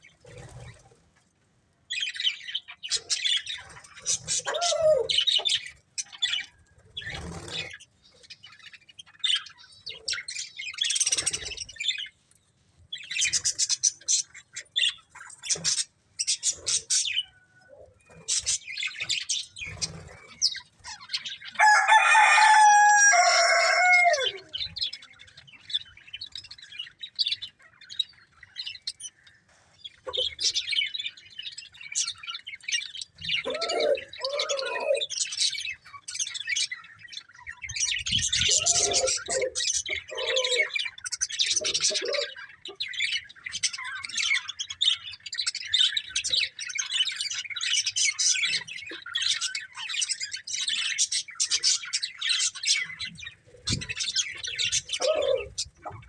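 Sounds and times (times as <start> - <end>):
harsh bird call: 21.5 - 24.8
budgerigars chirping: 37.5 - 56.0.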